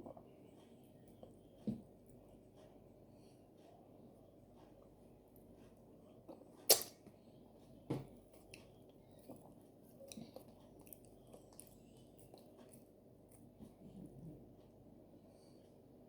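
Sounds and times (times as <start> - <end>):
person chewing food: 8.1 - 13.8.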